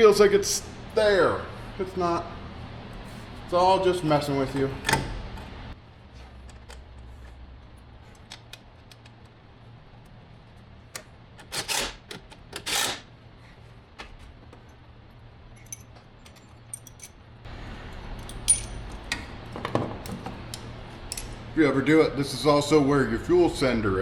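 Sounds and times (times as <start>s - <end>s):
metal tools clinking: 15.5s - 17.2s, 18.0s - 19.2s.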